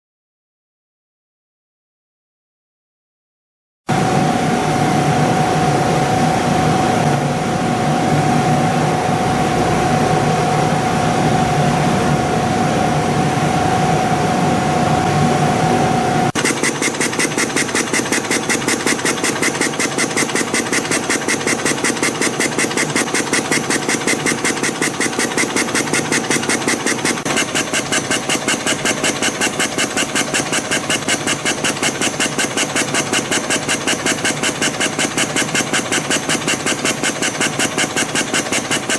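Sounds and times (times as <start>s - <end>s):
spring coiling machine running: 16.2s - 38.9s.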